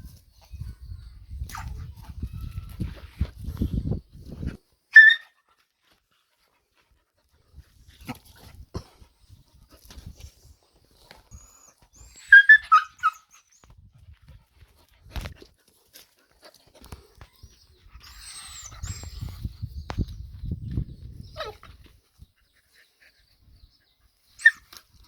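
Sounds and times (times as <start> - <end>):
puppy yelping: 5.0 - 5.4, 12.0 - 13.5, 24.4 - 24.7.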